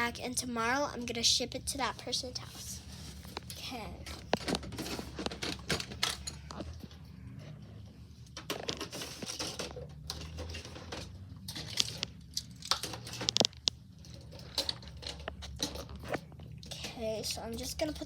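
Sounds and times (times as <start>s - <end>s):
plastic packaging crinkling: 11.5s - 16.2s.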